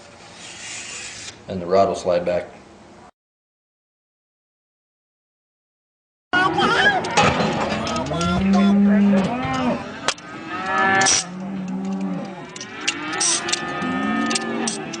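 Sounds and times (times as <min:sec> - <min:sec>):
cattle mooing: 0:08.0 - 0:15.0.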